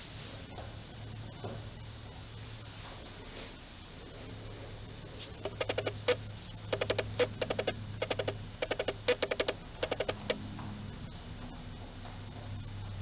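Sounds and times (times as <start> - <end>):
bursts of sharp clicks: 5.4 - 10.4.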